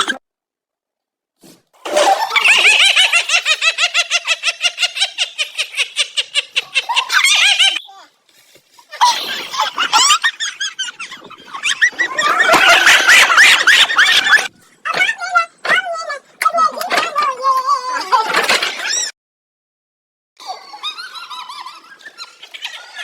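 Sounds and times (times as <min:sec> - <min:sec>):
high-pitched breathless laughter: 0:02.0 - 0:07.8, 0:08.8 - 0:14.5, 0:20.4 - 0:23.0.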